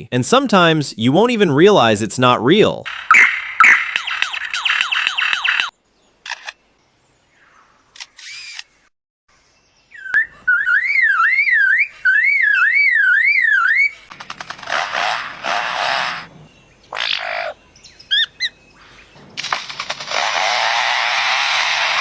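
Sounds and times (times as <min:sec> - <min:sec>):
lyrebird whistle sweeping: 0:03.1 - 0:05.7, 0:10.0 - 0:14.1
lyrebird clicks: 0:14.1 - 0:15.2, 0:19.4 - 0:20.6.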